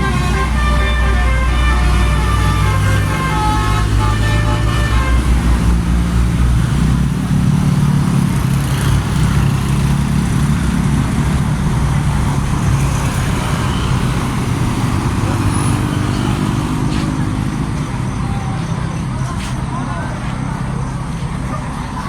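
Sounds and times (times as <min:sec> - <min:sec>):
musical bus horn: 0:00.0 - 0:06.9
bus engine rumbling: 0:00.0 - 0:22.0.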